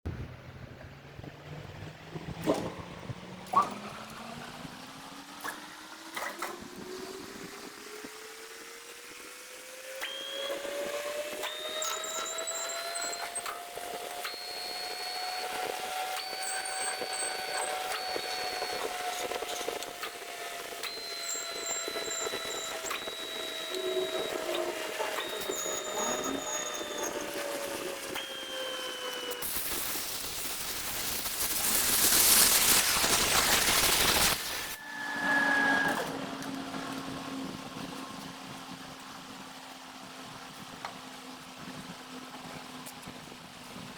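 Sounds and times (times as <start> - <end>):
steady motor hum: 2.0 - 43.9
lathe machine whine: 3.9 - 38.6
cutting tool squeal: 10.0 - 36.5.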